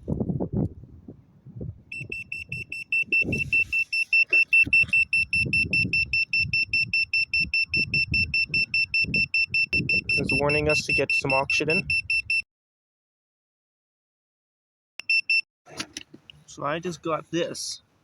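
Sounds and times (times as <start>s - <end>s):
rapid high-pitched alarm beeps: 1.9s - 12.4s.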